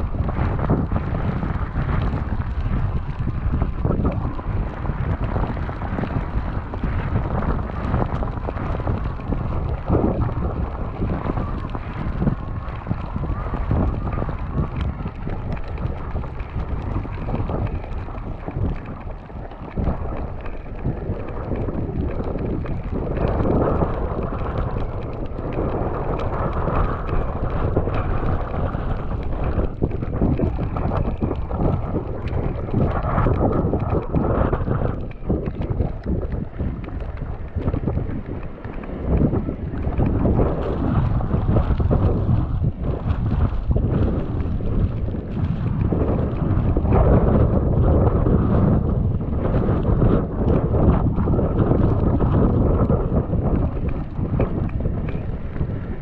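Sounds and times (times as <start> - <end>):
wind buffeting microphone: 0.0 - 56.0.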